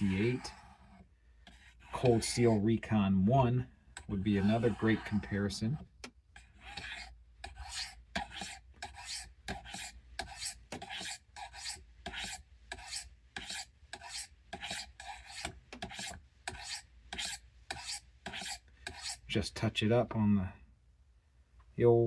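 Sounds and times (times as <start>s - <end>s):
knife blade scraping on sharpener: 6.5s - 19.2s.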